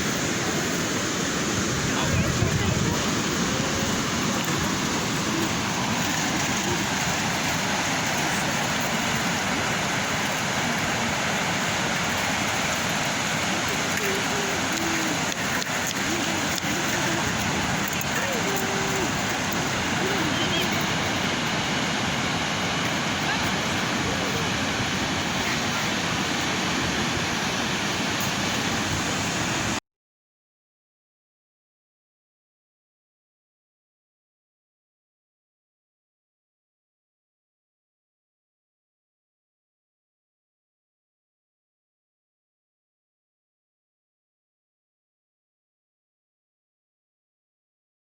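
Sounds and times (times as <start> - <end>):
sea waves rushing: 0.0 - 29.8
wind on microphone: 0.0 - 29.8.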